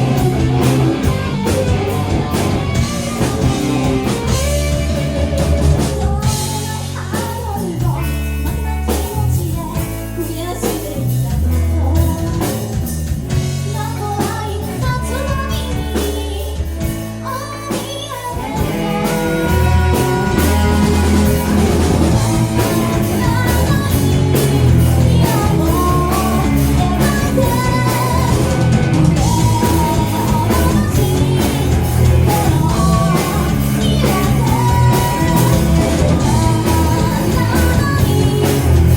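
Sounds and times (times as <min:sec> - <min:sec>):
live rock band playing: 0:00.0 - 0:38.9
lead vocalist singing: 0:13.7 - 0:38.9.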